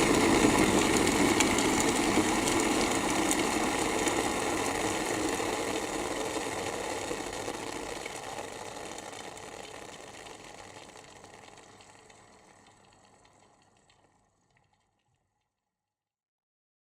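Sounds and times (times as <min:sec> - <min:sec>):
kettle ticking: 0:00.0 - 0:14.8
kettle boiling and bubbling: 0:00.0 - 0:15.4.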